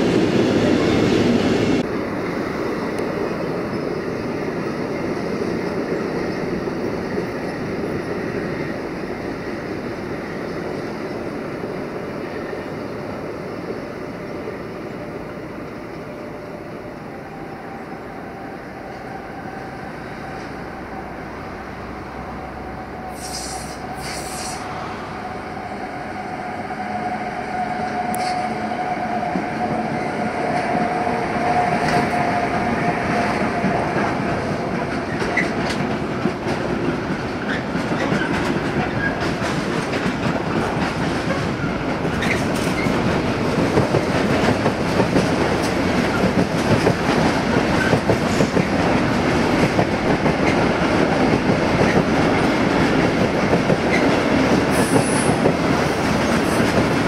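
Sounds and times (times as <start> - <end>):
train wheels clattering over rails: 30.5 - 57.0.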